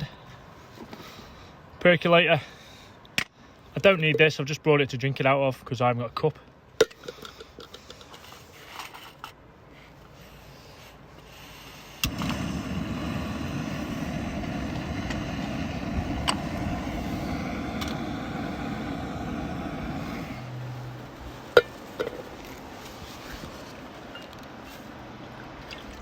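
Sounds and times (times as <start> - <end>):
stove igniter click: 12.0 - 19.8
gas stove burner burning: 12.0 - 23.6.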